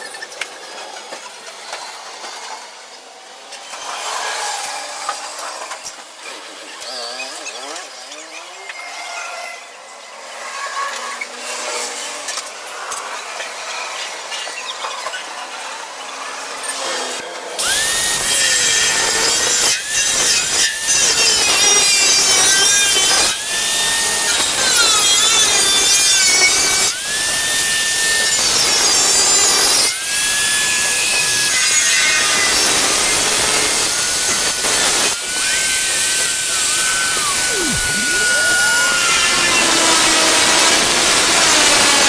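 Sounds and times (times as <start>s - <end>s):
power tool abrading sheet metal: 16.8s - 42.0s.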